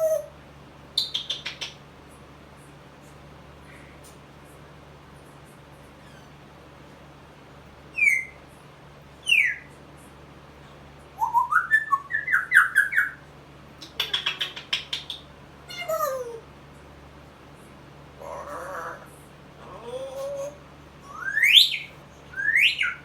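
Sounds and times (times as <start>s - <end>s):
parrot chirping: 1.0s - 1.8s, 7.9s - 8.4s, 9.2s - 9.7s, 11.2s - 13.2s, 13.8s - 16.4s, 18.2s - 23.0s
parrot whistling: 7.9s - 8.4s, 11.2s - 13.2s, 19.6s - 23.0s
parrot squawking: 13.8s - 16.4s, 18.2s - 23.0s.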